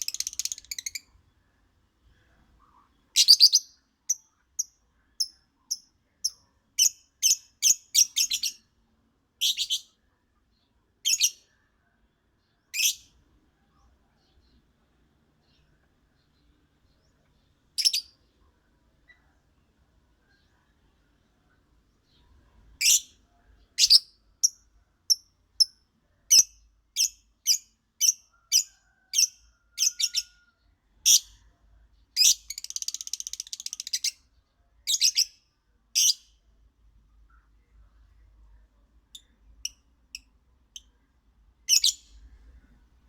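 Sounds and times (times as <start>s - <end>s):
lovebird chirping: 0.0s - 1.5s, 2.1s - 8.7s, 9.4s - 11.5s, 12.4s - 13.2s, 15.4s - 19.5s, 22.0s - 30.4s, 31.0s - 35.4s, 36.0s - 36.3s, 41.6s - 42.8s.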